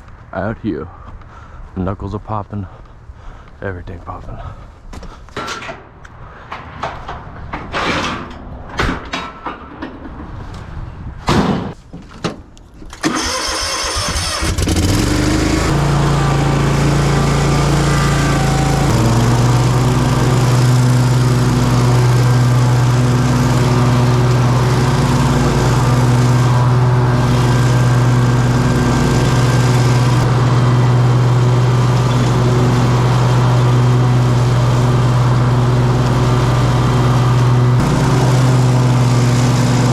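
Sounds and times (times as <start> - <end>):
engine starting and running: 12.9 - 39.9.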